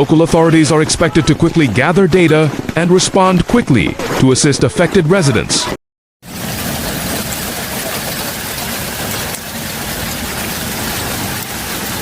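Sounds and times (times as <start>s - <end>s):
heavy rain hissing: 6.2s - 12.0s
vehicle engines idling: 6.3s - 12.0s.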